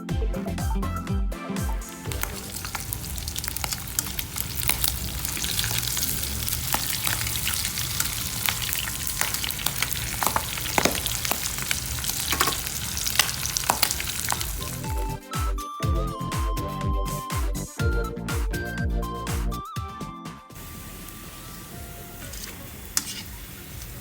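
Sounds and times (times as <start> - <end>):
oil crackling and popping: 2.1 - 15.2, 20.6 - 24.0
pork chops sizzling in hot oil: 2.1 - 15.2, 20.6 - 24.0.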